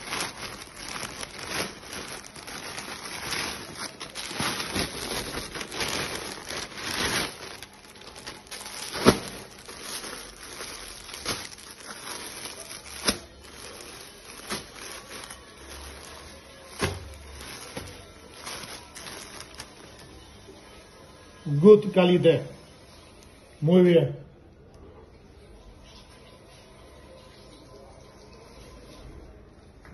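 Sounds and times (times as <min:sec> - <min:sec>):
clothes rustling: 0:00.0 - 0:20.1
plastic packaging crinkling: 0:00.0 - 0:20.2.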